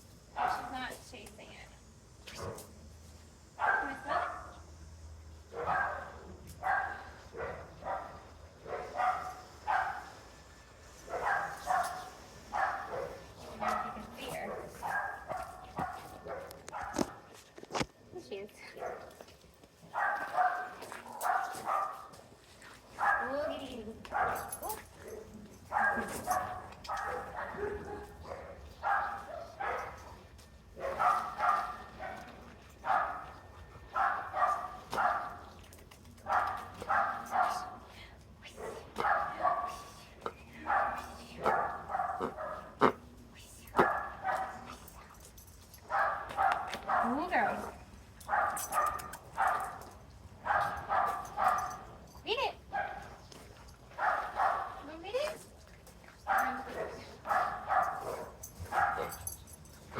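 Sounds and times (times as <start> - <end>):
dog barking: 0.4 - 0.8, 3.6 - 4.5, 5.6 - 10.1, 11.1 - 17.3, 18.8 - 19.1, 19.9 - 22.2, 23.0 - 30.2, 30.8 - 35.5, 36.2 - 37.8, 38.6 - 39.9, 40.6 - 43.0, 43.8 - 44.8, 45.9 - 47.7, 48.3 - 49.8, 50.4 - 53.2, 54.0 - 55.3, 56.3 - 59.4.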